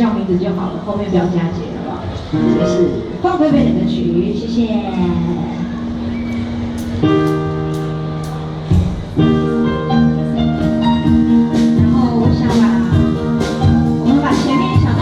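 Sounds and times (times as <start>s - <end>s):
held chords: 2.4s - 15.0s
steady drum beat: 10.6s - 15.0s.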